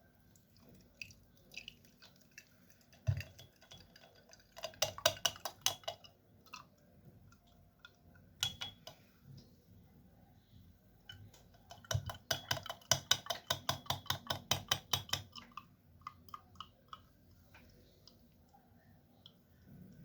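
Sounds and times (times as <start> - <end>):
utensils clicking and knocking: 11.1 - 15.7.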